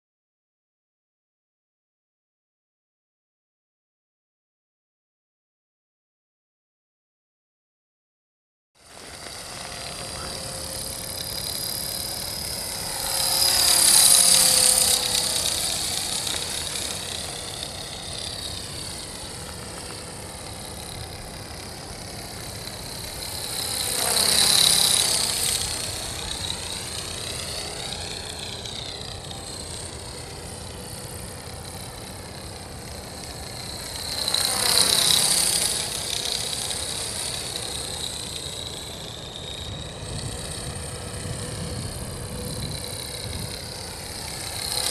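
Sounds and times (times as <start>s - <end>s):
rc helicopter whine: 8.8s - 44.9s.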